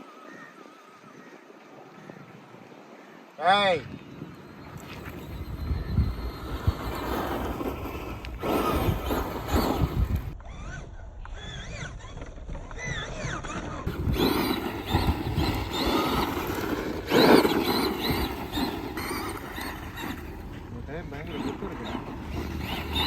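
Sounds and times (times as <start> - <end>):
wind on microphone: 3.7 - 23.0
toy car electric motor whining: 4.6 - 23.0
tyres on ground: 4.6 - 23.0.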